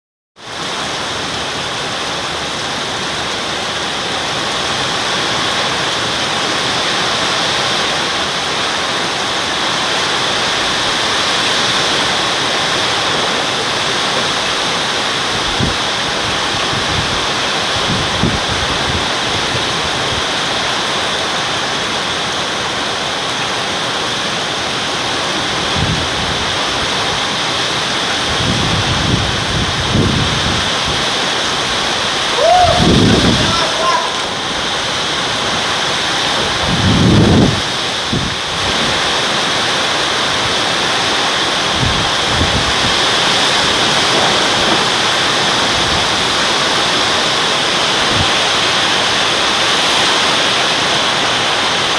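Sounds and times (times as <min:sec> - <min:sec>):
heavy rain pouring: 0:00.4 - 0:51.9
wind gusts buffeting microphone: 0:09.7 - 0:22.8, 0:24.8 - 0:51.8.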